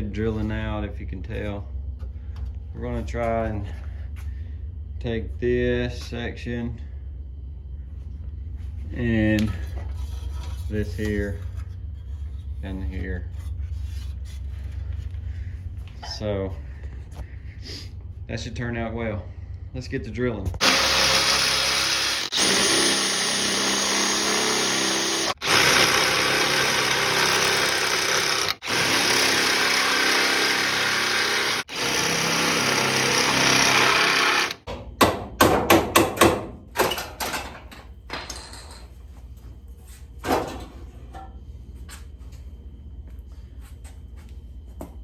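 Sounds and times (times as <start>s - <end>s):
low hum: 0.0s - 20.6s
electric drill drilling metal: 20.6s - 34.6s.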